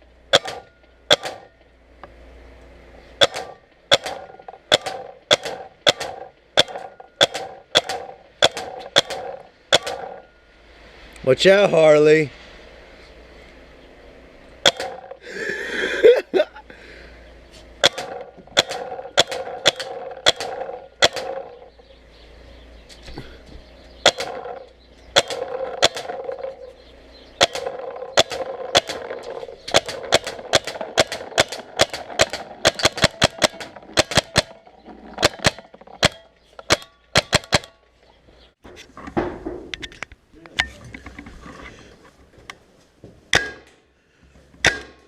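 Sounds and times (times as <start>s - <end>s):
paintball marker firing pops: 3.2s - 10.2s, 14.6s - 15.1s, 17.8s - 21.6s, 24.0s - 24.6s, 25.2s - 26.5s, 27.4s - 34.6s.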